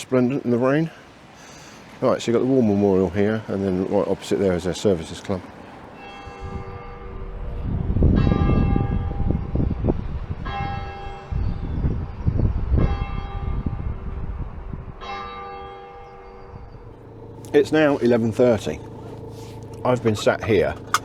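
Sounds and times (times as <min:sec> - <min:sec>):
church bell striking: 0:06.0 - 0:09.6, 0:10.4 - 0:11.4, 0:12.8 - 0:13.9, 0:15.0 - 0:21.0
low rumble: 0:16.0 - 0:21.0.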